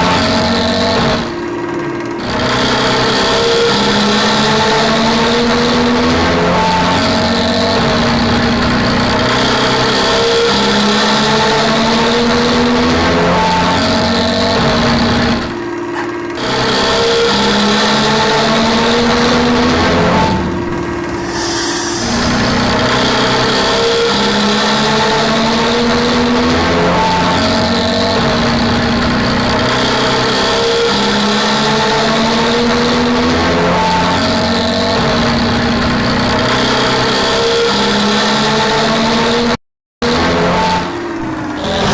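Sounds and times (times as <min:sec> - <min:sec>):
loud vehicle exhaust growl: 0:00.0 - 0:41.9.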